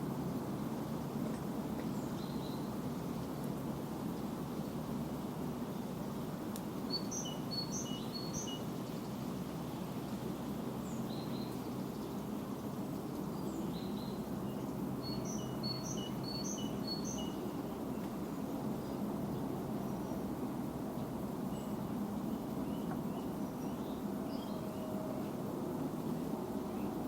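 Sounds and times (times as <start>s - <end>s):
songbird singing: 1.8s - 2.8s, 6.8s - 20.4s, 21.0s - 25.4s.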